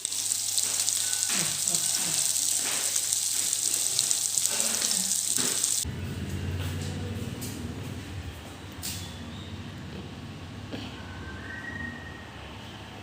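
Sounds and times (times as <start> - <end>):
fish sizzling in hot oil: 0.0 - 5.8.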